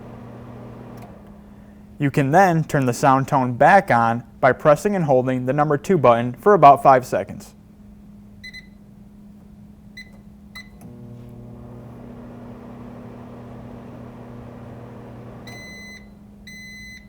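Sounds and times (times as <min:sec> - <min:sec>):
microwave oven humming: 0:00.0 - 0:01.9, 0:09.8 - 0:17.0
microwave keypad beeps: 0:08.4 - 0:08.8, 0:10.0 - 0:10.8, 0:15.4 - 0:17.0.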